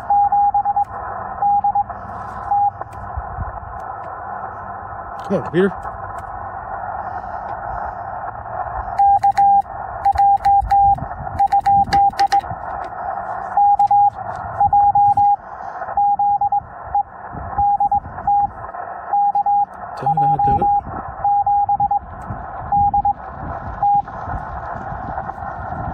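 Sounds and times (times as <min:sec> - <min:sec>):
morse code tone: 0:00.0 - 0:02.8, 0:09.0 - 0:12.5, 0:13.4 - 0:22.1, 0:22.7 - 0:23.2
radio receiver hiss: 0:00.0 - 0:25.9.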